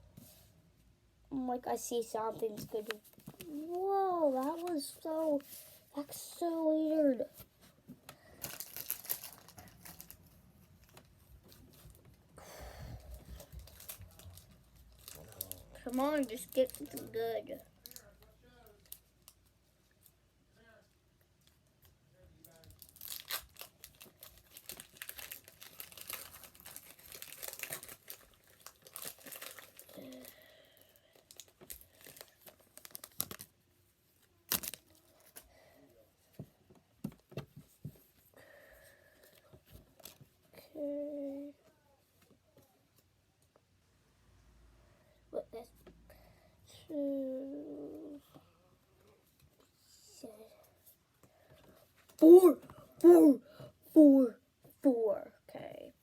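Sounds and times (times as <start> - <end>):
cards and foil wrappers rustling: 1.8 - 12.2, 12.8 - 20.2, 21.4 - 35.7, 51.8 - 53.3
foil wrapper tearing: 8.4 - 10.3, 22.5 - 30.4, 31.2 - 33.5, 34.5 - 35.4.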